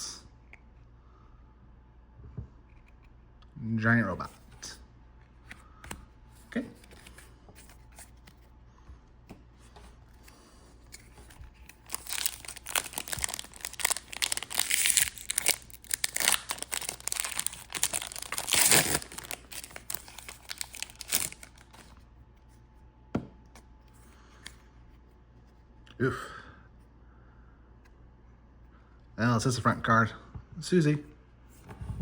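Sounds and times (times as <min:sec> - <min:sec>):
foil pack crinkling and tearing: 0:11.0 - 0:22.0.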